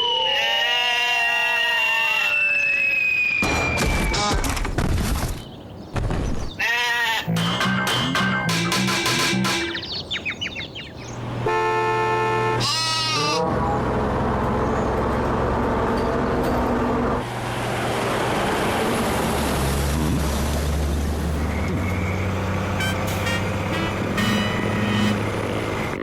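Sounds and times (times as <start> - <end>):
engine-like rumble: 11.0 - 26.0
held horn-like tone: 11.4 - 13.8, 22.7 - 25.6.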